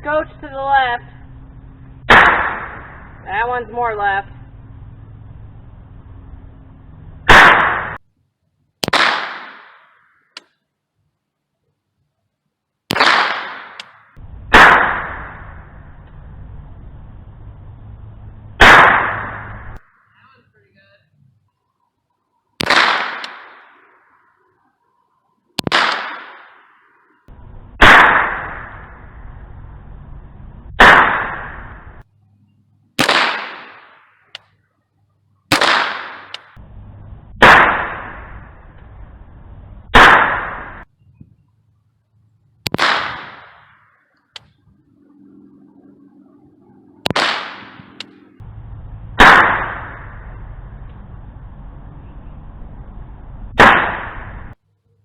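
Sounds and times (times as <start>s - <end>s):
gunshots with echo: 2.0s - 3.2s, 7.3s - 8.0s, 8.8s - 10.0s, 12.9s - 15.7s, 18.6s - 19.8s, 22.6s - 23.9s, 25.6s - 26.9s, 27.8s - 29.1s, 30.8s - 32.0s, 33.0s - 34.2s, 35.5s - 36.6s, 37.4s - 38.6s, 39.9s - 40.9s, 42.7s - 43.8s, 47.0s - 48.4s, 49.2s - 50.6s, 53.5s - 54.6s.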